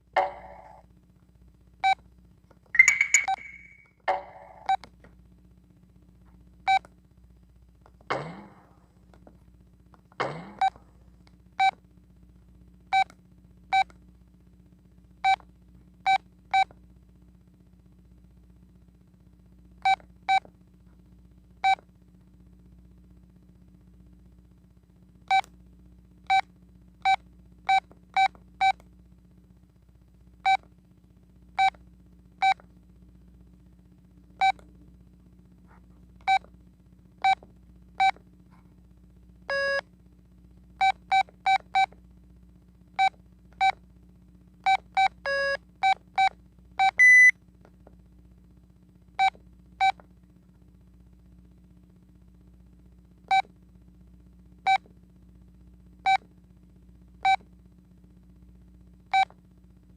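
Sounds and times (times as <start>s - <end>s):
louder higher beep: 2.8s - 4.6s
longer lower phone tones: 2.8s - 4.7s, 47.0s - 47.3s
phone key beeps: 2.8s - 4.7s, 46.9s - 47.3s.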